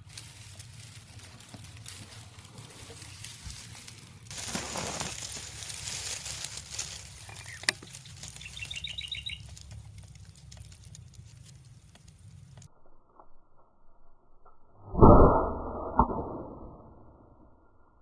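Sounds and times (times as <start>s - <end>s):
outdoor rustling: 0.0s - 12.9s
high bird chirps: 7.2s - 9.6s.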